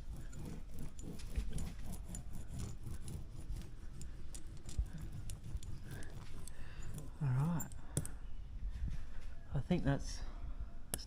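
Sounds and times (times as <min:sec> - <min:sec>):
rubbing and scraping on board: 0:00.0 - 0:07.3.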